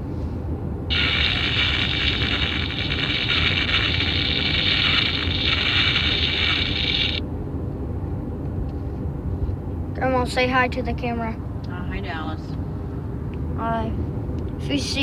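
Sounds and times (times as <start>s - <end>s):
toy speaker hissing effect: 0.9s - 7.2s.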